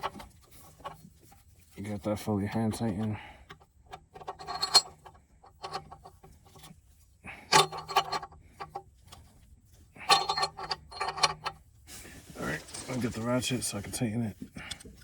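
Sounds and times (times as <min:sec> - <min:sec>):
metal tools clicking and rattling: 0:04.1 - 0:06.2, 0:07.5 - 0:08.4, 0:10.0 - 0:11.6.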